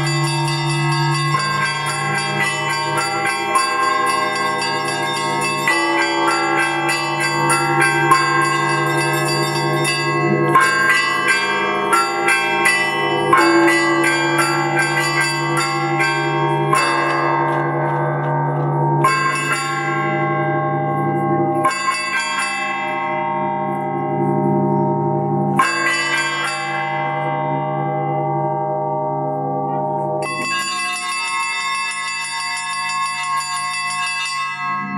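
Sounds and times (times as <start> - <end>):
deep large bells humming: 0.0 - 34.9
small church bells ringing: 0.0 - 34.9.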